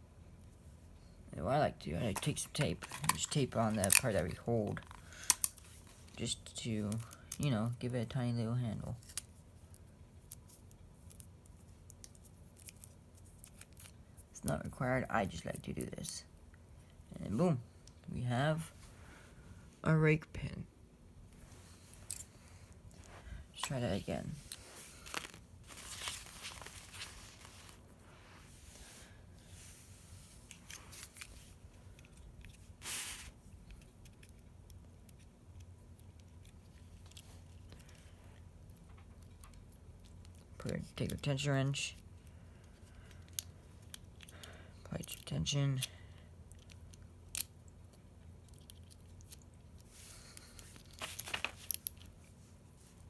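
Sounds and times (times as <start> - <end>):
light clicks and rustles: 42.2 - 53.0.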